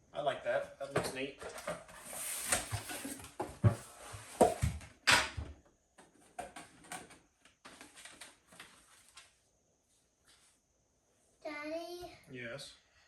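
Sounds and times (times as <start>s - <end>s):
plastic packaging rustling: 7.7s - 9.3s.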